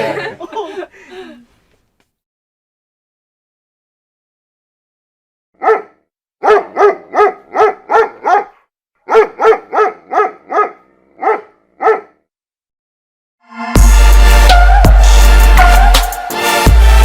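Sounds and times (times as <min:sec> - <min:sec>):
dog barking: 0:05.6 - 0:12.3.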